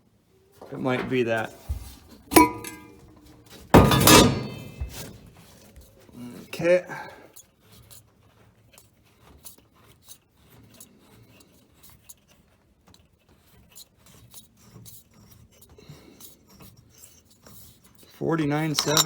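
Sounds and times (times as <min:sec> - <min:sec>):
clicks taps and rubbing of filter housing: 0:00.9 - 0:05.2.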